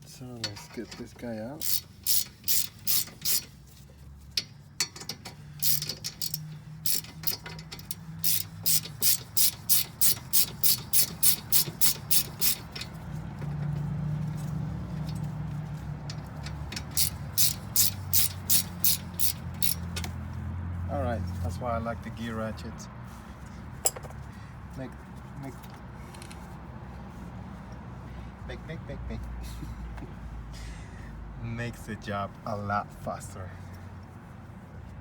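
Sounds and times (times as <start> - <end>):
ratchet clicking: 0.4 - 20.2.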